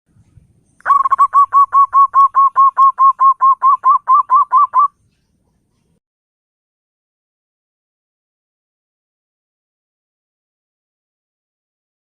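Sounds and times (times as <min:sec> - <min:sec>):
dove cooing: 0:00.8 - 0:05.0.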